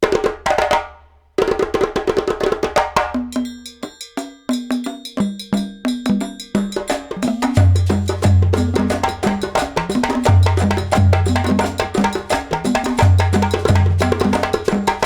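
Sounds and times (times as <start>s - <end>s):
percussive background music: 4.6s - 15.0s.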